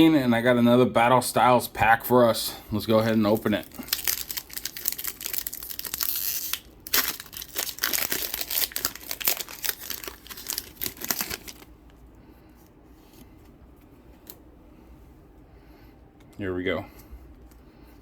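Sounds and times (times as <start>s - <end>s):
foil wrapper tearing and crinkling: 3.3s - 11.7s.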